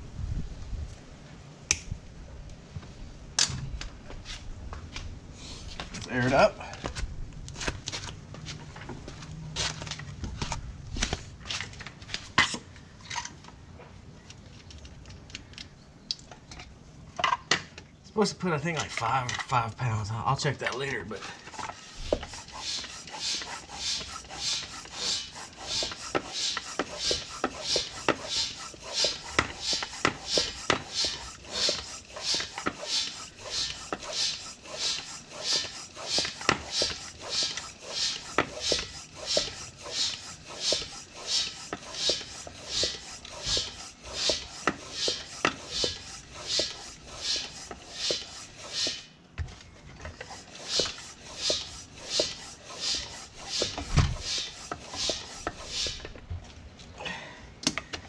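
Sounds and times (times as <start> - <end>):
hand air pump strokes hissing: 20.9 - 49.2, 50.1 - 56.2.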